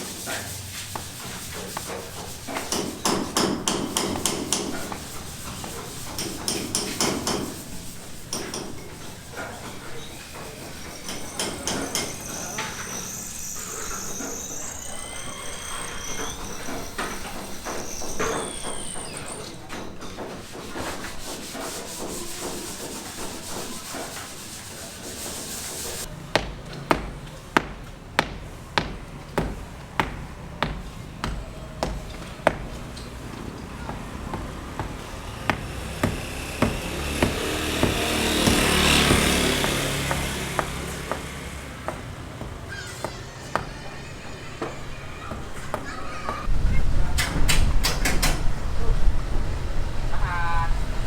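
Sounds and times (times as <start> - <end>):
tools scraping building materials: 0.0 - 26.8, 30.6 - 46.5
hammer blows: 0.0 - 46.5
scattered knocks: 1.7 - 13.2, 26.3 - 46.5.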